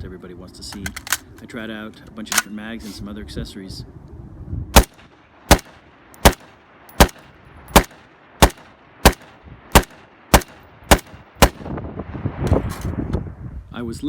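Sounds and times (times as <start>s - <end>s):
rifle gunshots: 4.8s - 11.7s.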